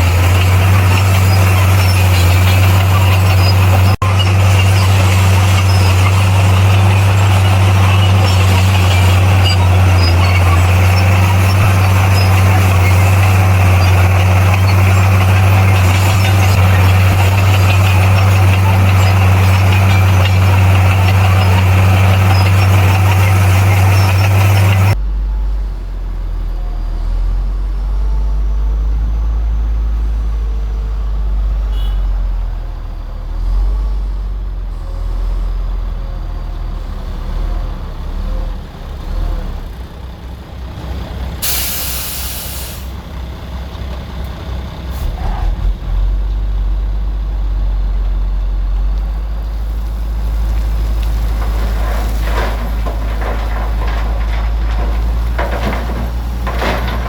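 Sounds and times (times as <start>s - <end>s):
diesel engine running: 0.0s - 57.0s
air release hiss: 41.4s - 43.0s.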